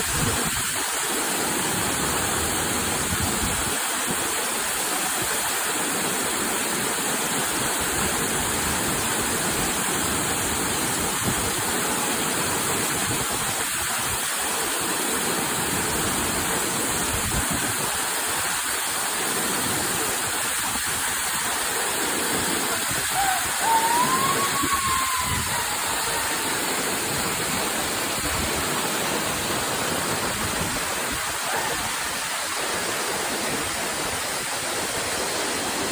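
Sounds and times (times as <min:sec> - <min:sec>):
waterfall roaring: 0:00.0 - 0:35.9
high call rising and falling: 0:23.2 - 0:27.2.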